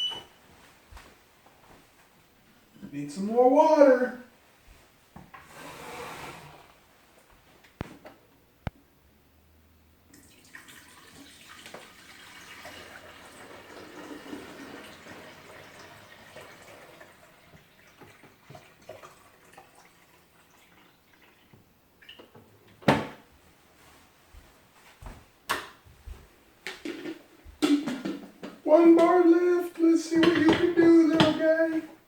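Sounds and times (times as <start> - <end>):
water pouring into reservoir: 10.1 - 22.2.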